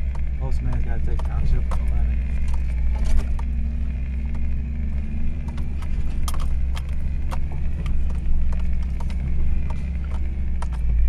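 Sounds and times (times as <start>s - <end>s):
engine and drivetrain rumble: 0.0s - 11.0s
sharp clicks and knocks: 0.0s - 11.0s.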